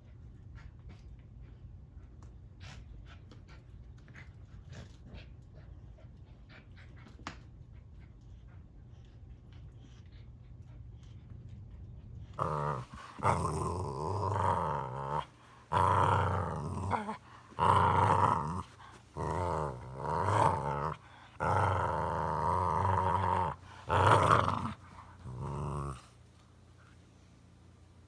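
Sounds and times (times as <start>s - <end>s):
dog growling: 12.4s - 26.2s.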